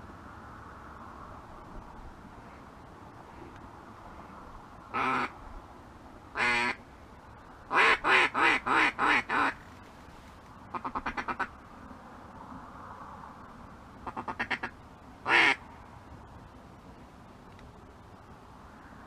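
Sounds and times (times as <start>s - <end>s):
duck call quacks: 4.9s - 5.3s, 6.4s - 6.8s, 7.7s - 9.6s, 10.7s - 11.5s, 14.0s - 14.7s, 15.3s - 15.6s.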